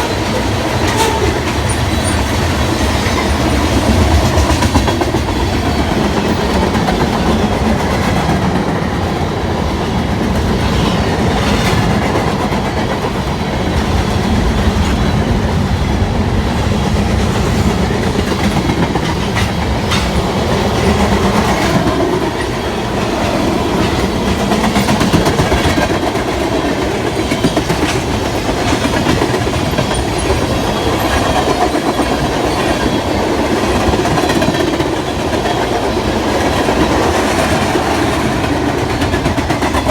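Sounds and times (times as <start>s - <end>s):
freight train cars rumbling: 0.0s - 39.9s
wheels clicking over rail joints: 17.1s - 39.9s.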